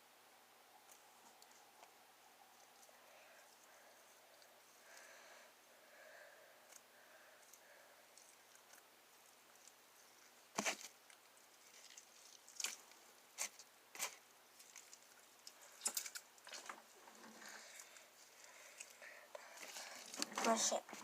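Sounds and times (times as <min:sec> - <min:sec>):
slime squelching and popping: 0:10.5 - 0:17.0.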